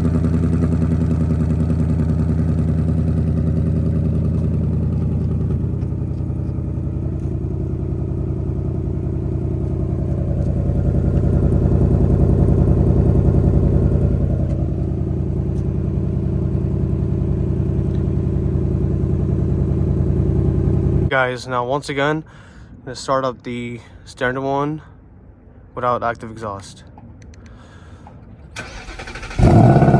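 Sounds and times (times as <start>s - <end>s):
car engine idling: 0.0s - 21.1s, 28.4s - 29.9s.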